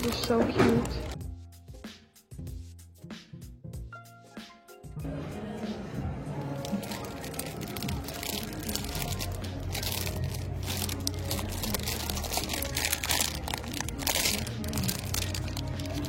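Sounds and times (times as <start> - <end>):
plastic packaging crinkling: 0.0 - 1.2, 6.5 - 16.0.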